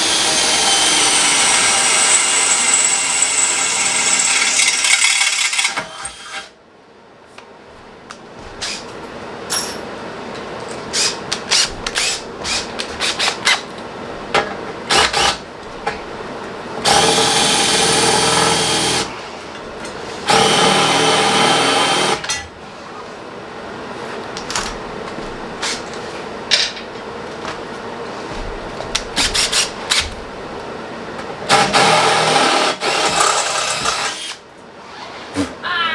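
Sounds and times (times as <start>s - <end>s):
power drill whining: 31.5s - 34.4s.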